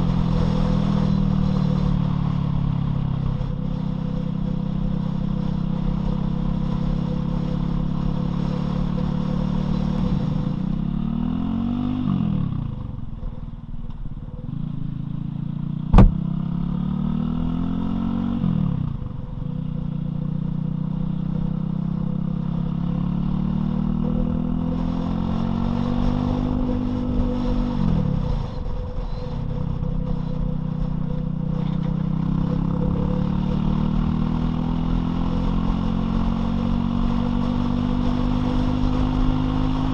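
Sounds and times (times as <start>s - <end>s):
motorcycle engine revving: 0.0s - 13.6s, 14.3s - 39.9s
sharp knock: 15.9s - 16.2s.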